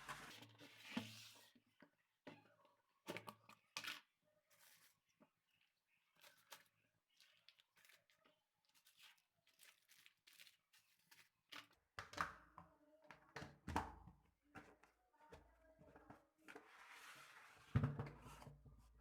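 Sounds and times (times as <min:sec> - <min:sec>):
groceries rustling: 0:04.0 - 0:11.9.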